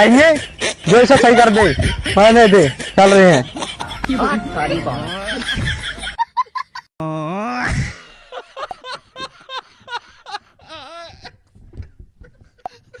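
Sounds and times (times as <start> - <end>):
person laughing: 0.4 - 6.8.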